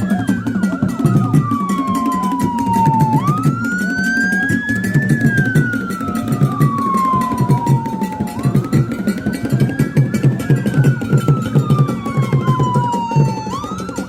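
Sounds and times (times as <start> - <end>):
music with steady drum beat: 0.0 - 14.0
wailing siren: 0.0 - 14.0.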